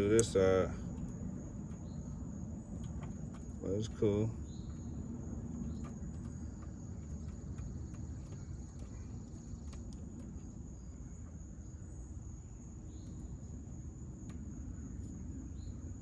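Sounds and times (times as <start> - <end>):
light clicks and taps: 0.0 - 10.6
low background rumble: 0.0 - 16.0.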